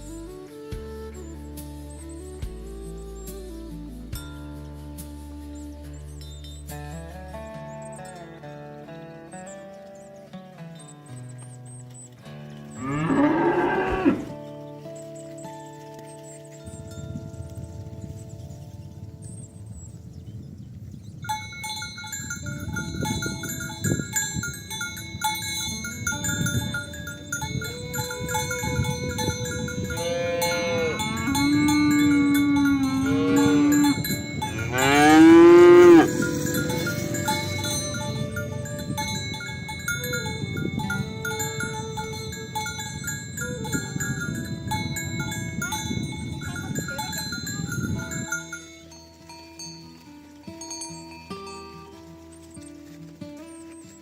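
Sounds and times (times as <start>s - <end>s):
light melodic music: 0.0s - 54.0s
cowbells clanking: 5.8s - 19.0s, 21.0s - 54.0s
oxen rumble and calls: 12.2s - 14.4s, 27.4s - 42.8s
cows mooing: 12.4s - 14.4s, 25.8s - 42.9s.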